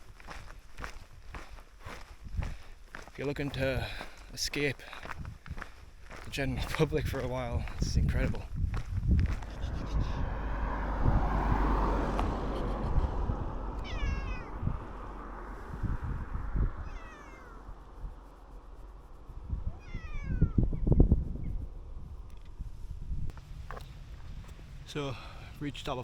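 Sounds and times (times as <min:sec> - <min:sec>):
low rumble: 0:06.5 - 0:25.8.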